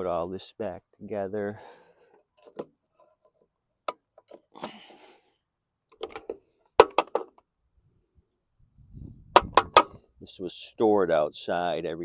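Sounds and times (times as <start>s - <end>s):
mower parts clicking and knocking: 2.1s - 4.8s, 5.9s - 7.5s, 9.3s - 10.0s.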